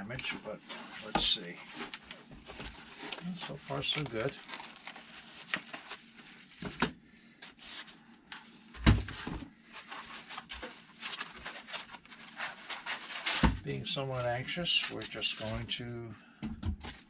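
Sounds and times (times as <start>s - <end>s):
cardboard rustling and knocking: 6.5s - 7.0s, 8.8s - 9.5s, 10.3s - 13.6s.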